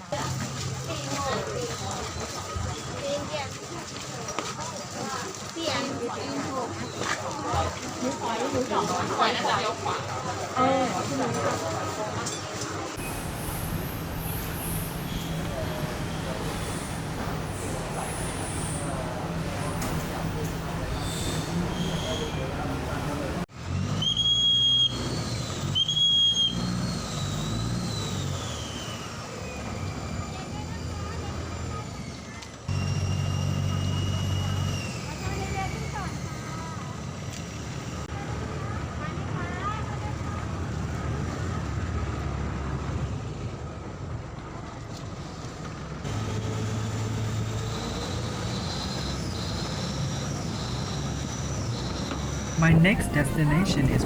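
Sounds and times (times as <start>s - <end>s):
low engine rumble: 13.0s - 23.5s, 52.4s - 54.0s
shrill whistle blasts: 13.0s - 31.0s, 32.7s - 36.7s
background noise: 52.6s - 54.0s.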